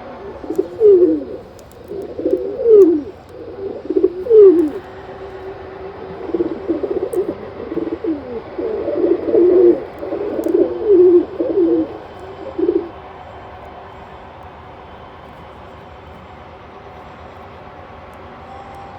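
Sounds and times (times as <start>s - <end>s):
pigeons cooing: 0.0s - 13.1s.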